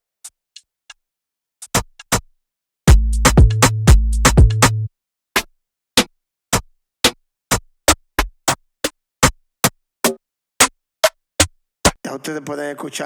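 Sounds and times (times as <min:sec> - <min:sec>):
deep bass note: 0:02.9 - 0:04.9
electronic drum loop: 0:02.9 - 0:04.9.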